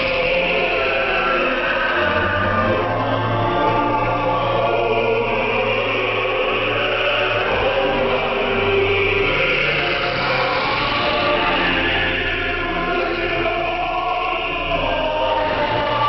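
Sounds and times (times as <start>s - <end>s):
choir singing on shortwave radio: 0.0s - 16.0s.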